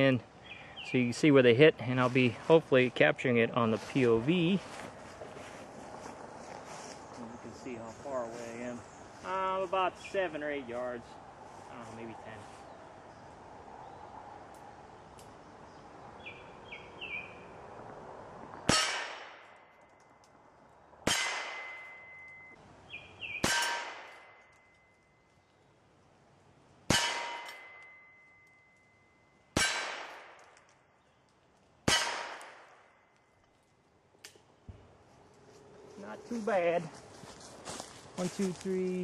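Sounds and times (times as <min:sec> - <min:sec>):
revolver shots: 0:18.6 - 0:19.6
steel target clanging: 0:18.7 - 0:19.3, 0:21.1 - 0:22.5, 0:23.4 - 0:24.4, 0:26.9 - 0:28.4, 0:29.5 - 0:30.2, 0:31.9 - 0:32.5.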